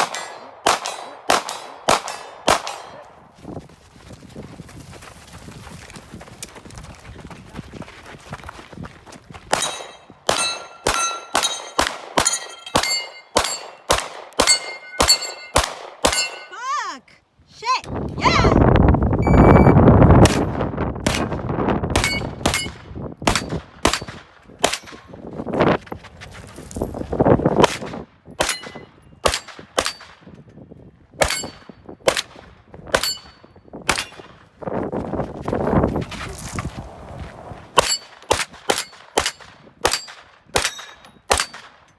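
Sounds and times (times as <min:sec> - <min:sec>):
gunshots: 0:00.0 - 0:03.1, 0:09.5 - 0:16.5, 0:20.2 - 0:25.1, 0:27.6 - 0:30.2, 0:37.8 - 0:41.8
bullet clanging on steel plate: 0:09.6 - 0:16.5, 0:38.7 - 0:41.6.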